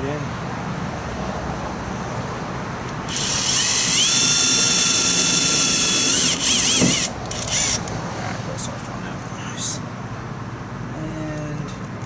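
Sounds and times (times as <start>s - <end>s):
power drill driving screw into metal: 3.1s - 7.8s.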